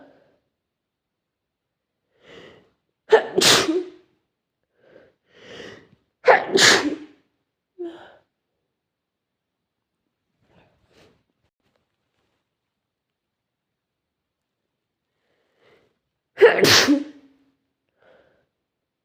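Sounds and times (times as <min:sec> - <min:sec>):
person sneezing: 0:03.1 - 0:04.1, 0:06.2 - 0:07.2, 0:16.4 - 0:17.3
breath in: 0:04.7 - 0:06.0.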